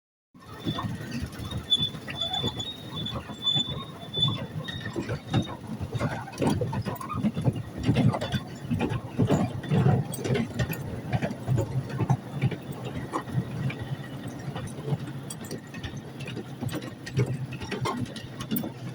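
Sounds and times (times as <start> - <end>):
thin high wheel squeal: 0.4 - 7.4
wheels clattering over rails: 0.4 - 18.9.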